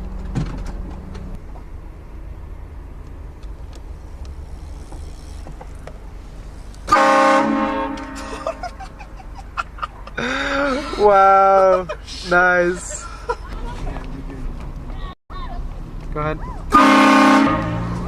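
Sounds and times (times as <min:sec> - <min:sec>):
car engine rumble: 0:00.0 - 0:18.0
train horn blast: 0:06.9 - 0:08.5, 0:16.7 - 0:18.0.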